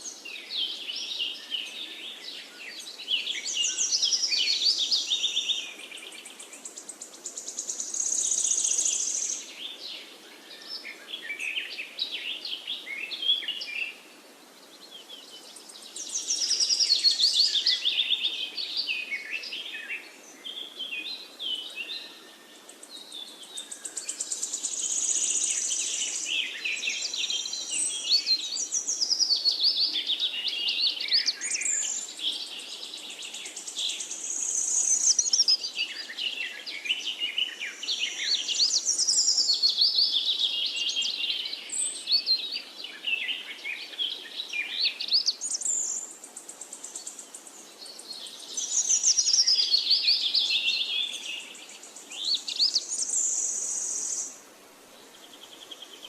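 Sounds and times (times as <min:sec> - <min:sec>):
songbirds singing: 0:00.0 - 0:56.0.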